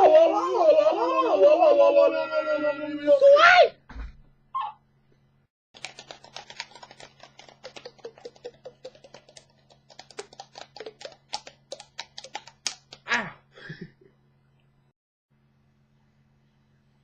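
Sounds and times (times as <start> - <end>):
rapid sharp clicking: 5.8 - 13.0.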